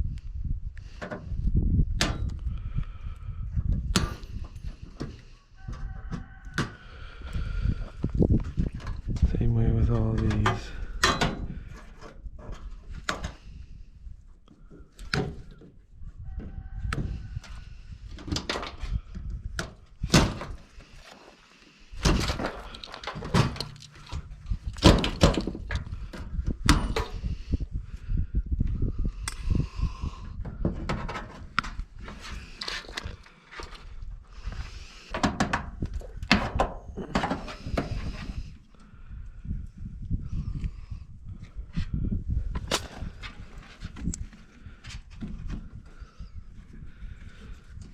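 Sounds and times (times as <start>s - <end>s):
sheet metal clanking and rattling: 22.1s - 25.8s.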